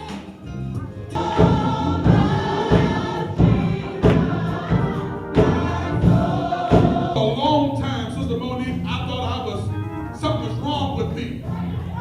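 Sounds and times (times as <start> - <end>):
steady drum beat: 0.0 - 7.5
band accompaniment: 0.0 - 11.9
gospel choir singing: 0.0 - 12.0.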